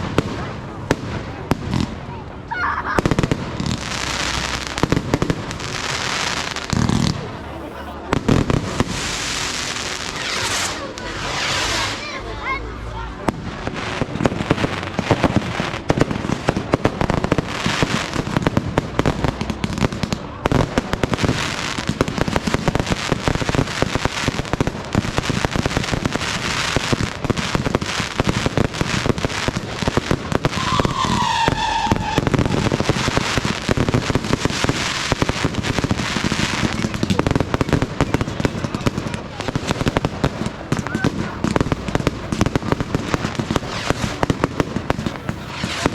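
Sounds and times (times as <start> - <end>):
fireworks crackling and popping: 0.0 - 45.9
firework shells bursting: 22.2 - 45.9.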